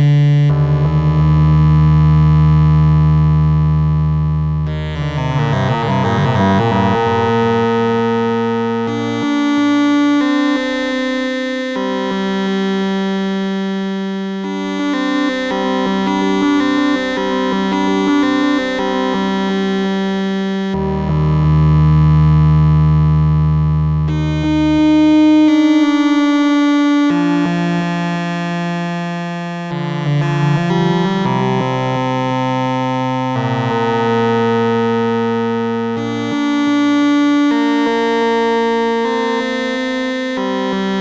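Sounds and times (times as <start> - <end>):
analog synthesizer held notes: 0.0 - 10.8
deep bass synth note: 0.5 - 8.0, 20.8 - 24.9.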